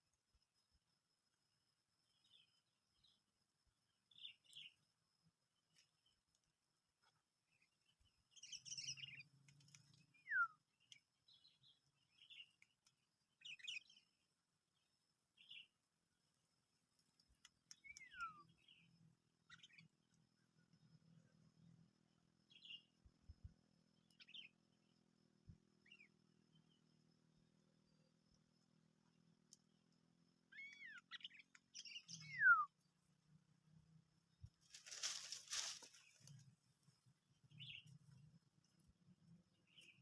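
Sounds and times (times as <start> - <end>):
bird chirps: 4.1 - 4.8, 7.5 - 14.2, 14.8 - 15.8, 17.3 - 21.4, 22.5 - 23.1, 24.0 - 24.6, 25.8 - 28.6, 30.4 - 33.0, 37.4 - 38.3, 39.5 - 40.0
falling bird whistle notes: 31.8 - 32.7.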